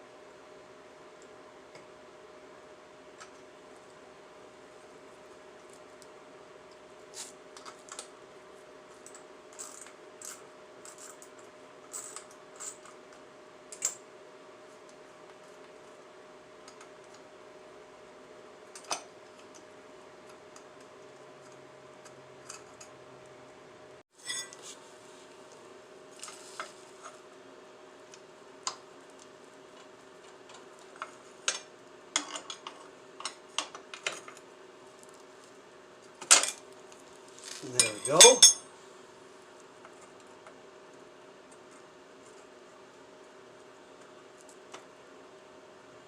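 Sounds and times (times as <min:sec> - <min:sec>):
steady background hum: 0:00.0 - 0:46.0
metal wrenches clinking: 0:37.5 - 0:38.6.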